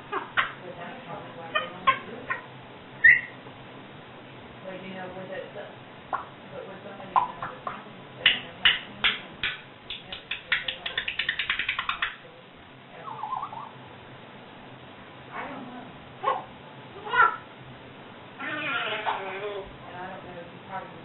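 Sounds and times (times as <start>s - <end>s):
parrot warbling call: 1.5s - 3.4s, 13.0s - 13.8s, 16.2s - 17.5s, 18.4s - 19.6s
parrot clicking: 8.2s - 12.2s.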